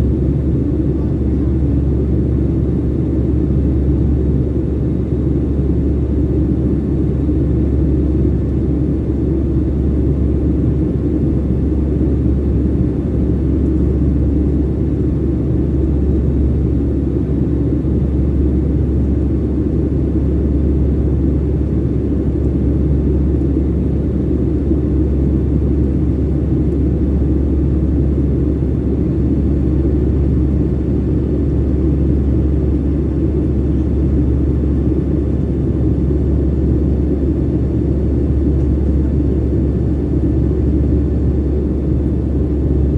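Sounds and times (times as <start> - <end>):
airliner engines rumbling: 0.0 - 42.9.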